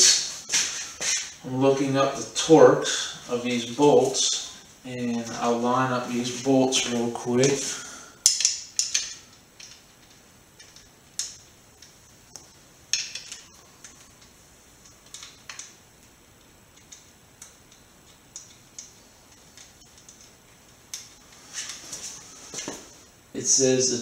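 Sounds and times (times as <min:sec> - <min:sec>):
metal bolts clicking and clinking: 0:08.2 - 0:11.9, 0:12.9 - 0:13.6.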